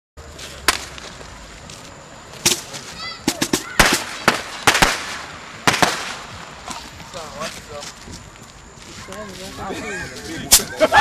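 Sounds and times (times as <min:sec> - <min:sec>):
fireworks bangs and pops: 0:00.4 - 0:08.3.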